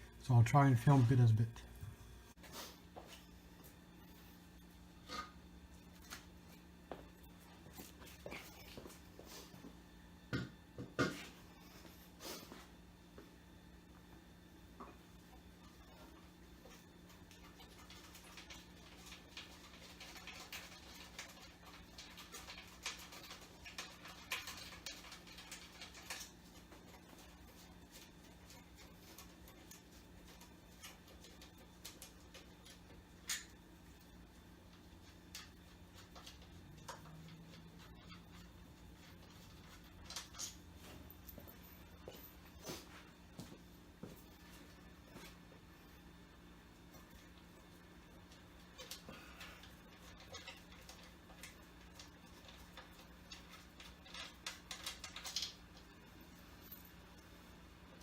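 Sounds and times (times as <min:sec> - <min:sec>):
low steady hum: 0:00.0 - 0:58.0
faint clicks and rustles: 0:15.2 - 0:58.0.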